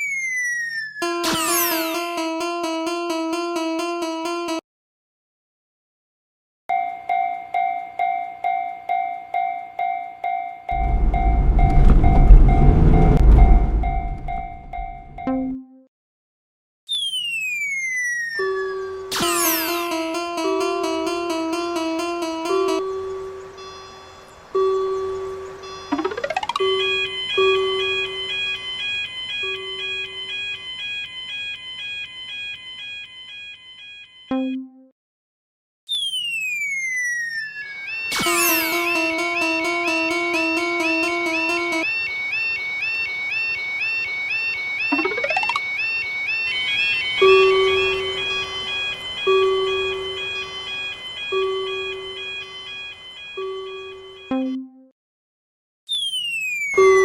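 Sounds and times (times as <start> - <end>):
electronic crossing bell chime: 6.7 - 15.6, 18.4 - 34.6, 37.7 - 54.6
lower steady tone: 10.7 - 15.3
short low tone: 10.7 - 15.4
high two-pitch alarm tone: 37.6 - 54.6.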